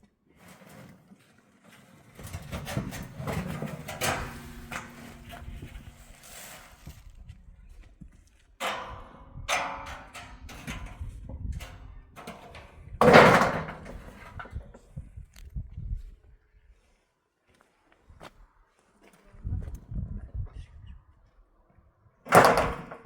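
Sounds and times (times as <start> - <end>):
knocking rustling and scraping: 0.3 - 7.4.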